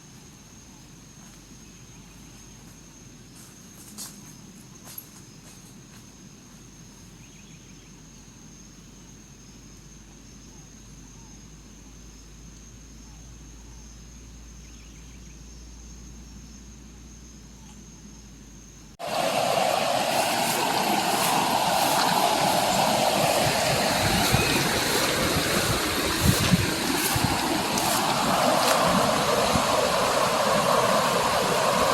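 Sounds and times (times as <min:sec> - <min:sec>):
rushing water: 0:19.0 - 0:31.9.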